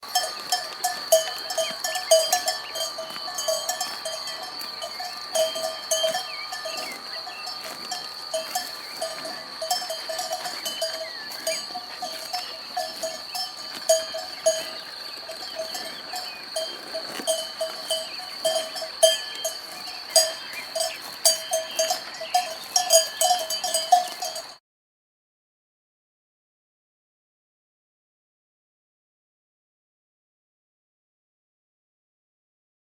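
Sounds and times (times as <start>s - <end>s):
cowbells clanking: 0.0s - 24.6s.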